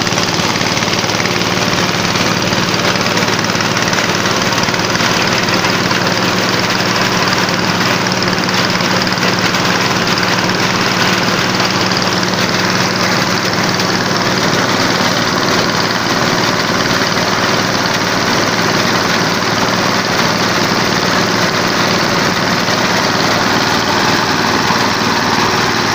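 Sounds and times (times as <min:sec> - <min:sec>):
engine-driven corn sheller running: 0:00.0 - 0:25.9.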